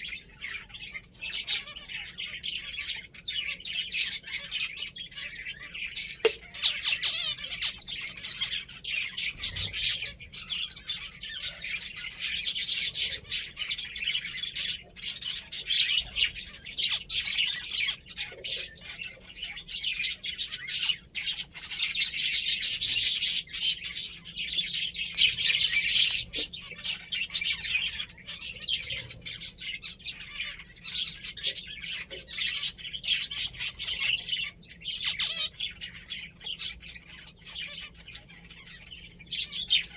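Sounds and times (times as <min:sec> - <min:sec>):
finches chirping: 0:00.0 - 0:39.9.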